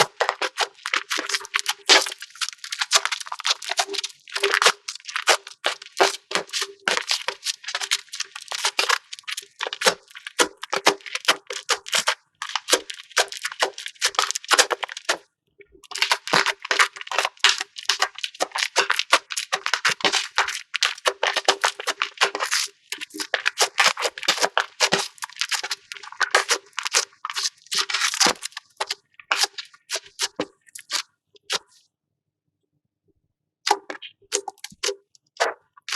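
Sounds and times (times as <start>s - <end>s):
slime crunching and crackling: 0.0s - 31.8s, 33.7s - 35.9s.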